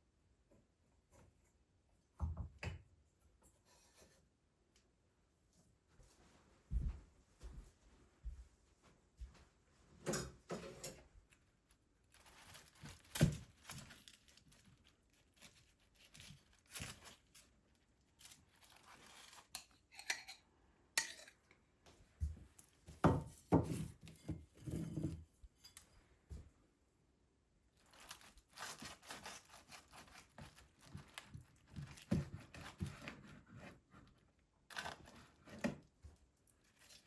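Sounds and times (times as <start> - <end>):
dishes and pots being handled: 19.9 - 20.4.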